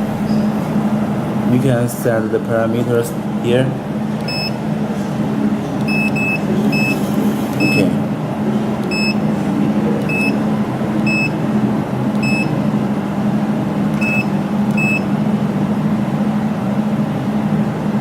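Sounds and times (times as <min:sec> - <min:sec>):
machine low hum: 0:00.0 - 0:18.0
short electronic beeps: 0:04.3 - 0:04.6, 0:05.9 - 0:07.0, 0:07.6 - 0:07.9, 0:08.9 - 0:09.2, 0:10.0 - 0:10.4, 0:11.0 - 0:11.4, 0:12.2 - 0:12.5, 0:14.0 - 0:15.1.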